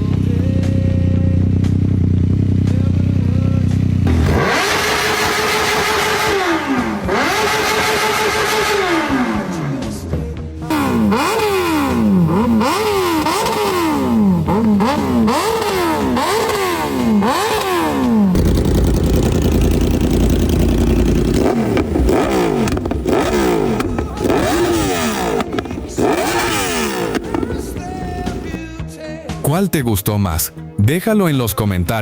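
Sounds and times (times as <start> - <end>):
deep steady engine rumble: 0.0 - 28.7
motorcycle throttle blips: 10.6 - 28.6.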